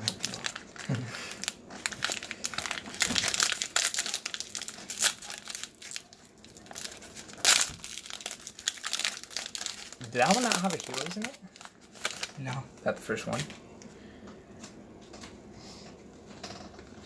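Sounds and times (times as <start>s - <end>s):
card pack wrapper crinkling: 0.0s - 13.6s
cards rustling: 6.8s - 12.6s.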